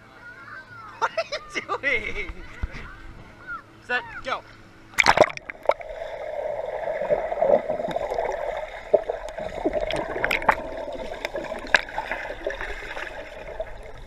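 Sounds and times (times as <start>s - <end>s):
pool water gurgling and sloshing: 0.0s - 14.0s
small water splashes: 4.9s - 14.0s.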